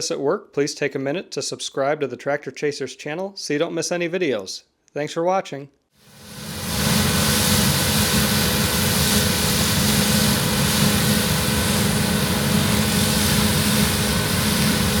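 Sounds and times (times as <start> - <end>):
faint machinery whines: 6.1 - 15.0
heavy machinery engine drone: 6.1 - 15.0.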